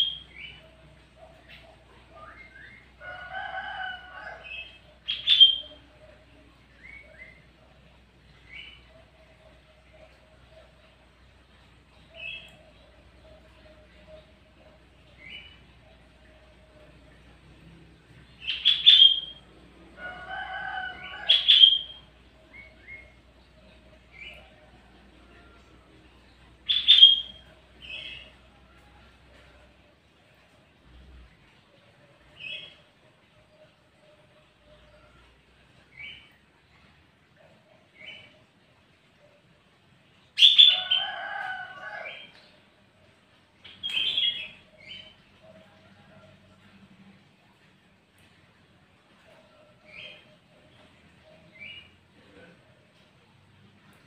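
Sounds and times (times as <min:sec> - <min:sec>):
bird chattering song: 0:04.5 - 0:05.8, 0:18.4 - 0:19.4, 0:21.3 - 0:23.2, 0:26.6 - 0:28.3.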